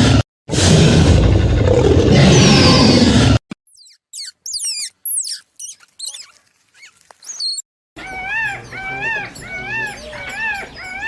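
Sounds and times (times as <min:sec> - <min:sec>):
mouse squeaking: 0:03.7 - 0:08.5.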